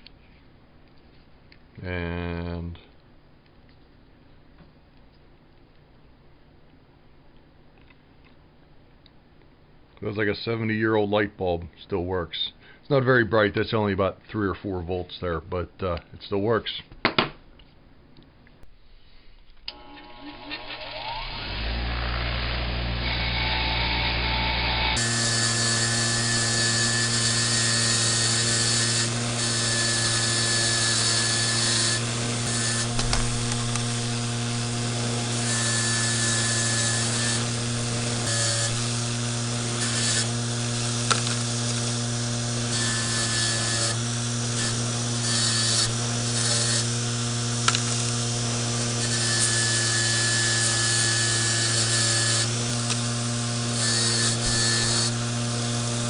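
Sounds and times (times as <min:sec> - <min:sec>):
wire wheel motor humming: 0:19.7 - 0:56.0.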